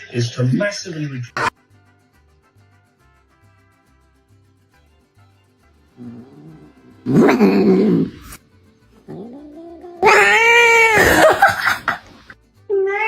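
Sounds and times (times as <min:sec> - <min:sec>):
cat yowling: 0:09.1 - 0:11.5, 0:12.7 - 0:13.0.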